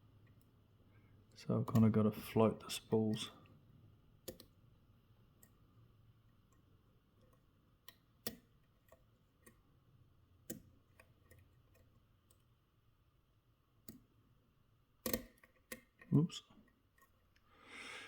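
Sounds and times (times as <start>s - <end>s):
lock pick clicking in padlock: 15.0s - 16.1s.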